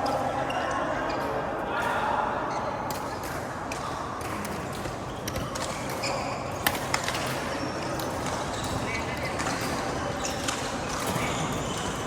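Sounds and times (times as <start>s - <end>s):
shoe squeaks: 5.8s - 6.6s, 7.5s - 12.0s.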